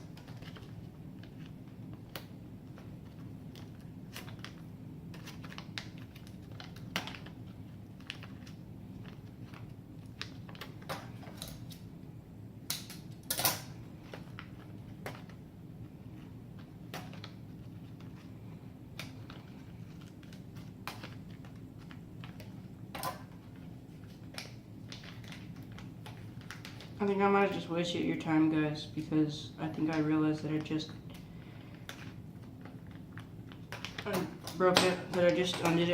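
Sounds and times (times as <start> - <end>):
steady low hum: 0.0 - 35.9.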